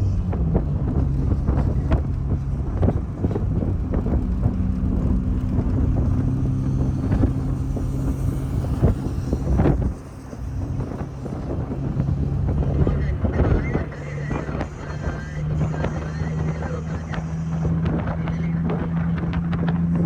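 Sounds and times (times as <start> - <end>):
car engine and road hum: 0.0 - 20.0.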